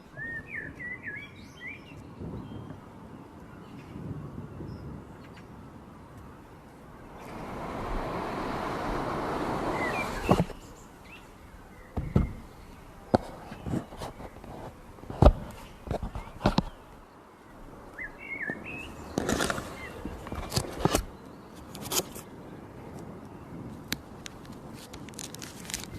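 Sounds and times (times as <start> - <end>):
bird chirping faintly: 6.2 - 15.0
packaging rustling: 24.8 - 25.9.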